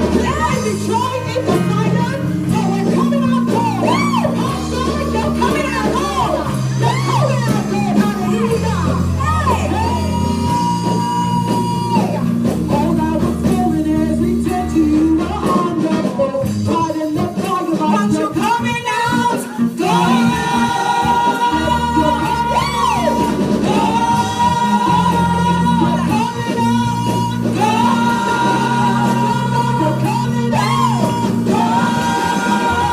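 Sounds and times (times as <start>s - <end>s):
held bass notes: 0.0s - 17.0s, 18.8s - 32.9s
choir singing gospel music: 0.0s - 32.9s.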